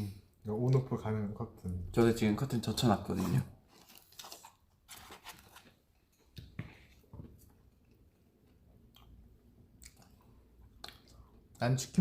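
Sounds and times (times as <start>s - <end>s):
faint chewing: 5.4s - 11.6s.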